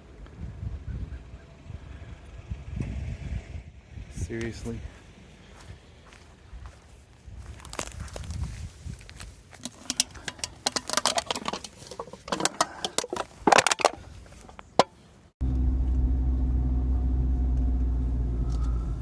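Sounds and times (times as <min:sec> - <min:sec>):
footsteps scuffing and clicking: 0:05.0 - 0:14.8
car driving rumble from inside: 0:15.4 - 0:19.0.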